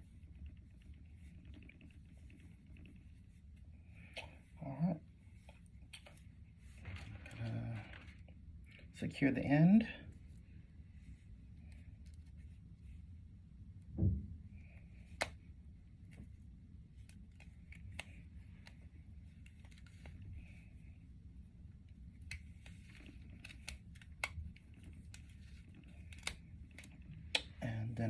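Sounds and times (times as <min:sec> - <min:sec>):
sharp little clicks and snaps: 0:05.4 - 0:06.3, 0:15.0 - 0:15.5, 0:17.0 - 0:18.8, 0:22.2 - 0:27.6.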